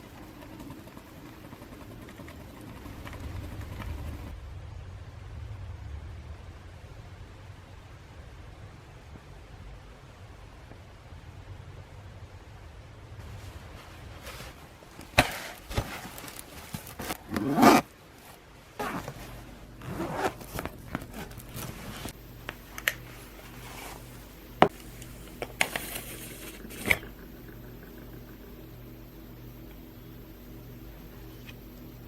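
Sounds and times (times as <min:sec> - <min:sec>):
hands scraping and rubbing: 0:13.2 - 0:17.9, 0:18.8 - 0:27.1.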